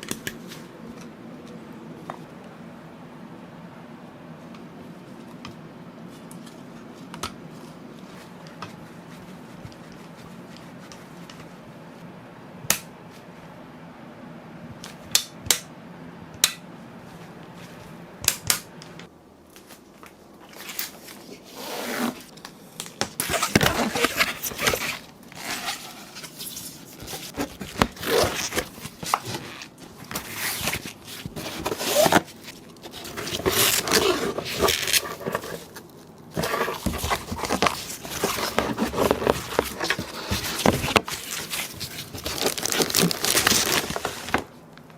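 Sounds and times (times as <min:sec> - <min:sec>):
scraping and rustling: 0:23.3 - 0:44.5.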